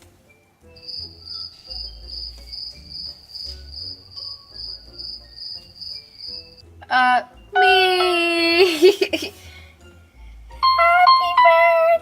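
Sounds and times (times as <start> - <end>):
cricket chirping: 0.8 - 6.6.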